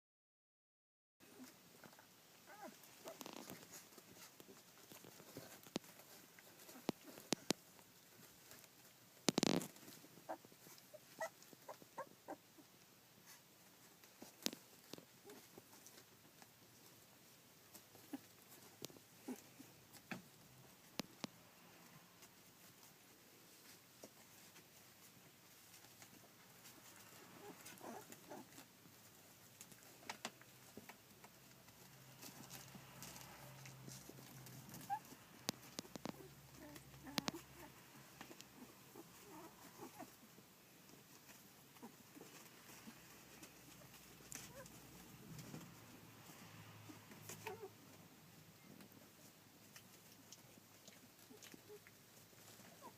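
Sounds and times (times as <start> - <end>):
puppies squeaking and whimpering: 2.5 - 4.0, 9.4 - 12.4, 27.1 - 28.6, 34.7 - 37.8
light scuffling clicks: 2.7 - 11.8.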